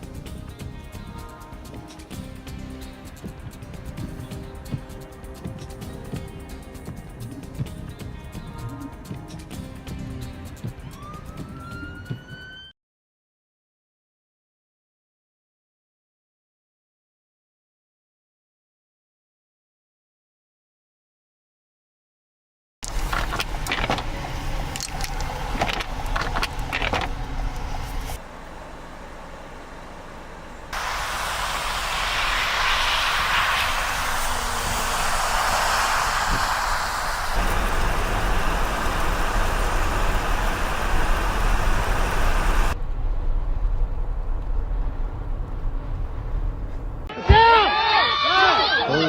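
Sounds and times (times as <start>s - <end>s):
low road rumble: 22.8s - 47.1s
vehicle noise: 22.8s - 47.1s
steady hum: 23.0s - 43.0s.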